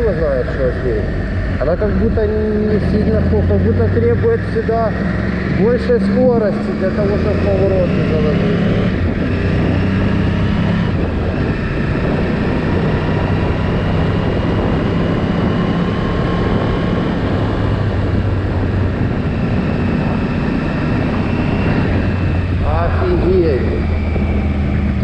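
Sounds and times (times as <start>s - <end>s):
wind and road noise: 0.0s - 25.0s.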